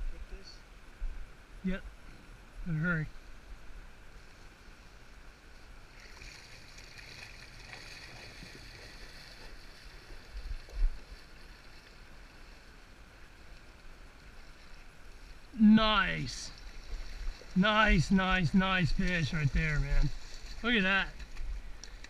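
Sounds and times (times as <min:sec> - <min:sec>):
river water rushing: 0:11.2 - 0:22.0.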